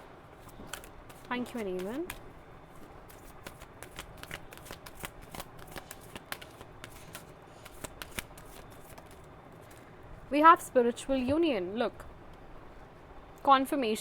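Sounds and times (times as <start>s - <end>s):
cards being shuffled: 0.4s - 9.9s.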